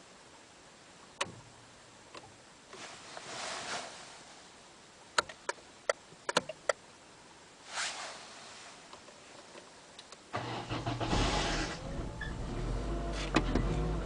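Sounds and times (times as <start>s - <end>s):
brief soft hiss: 7.6s - 8.9s.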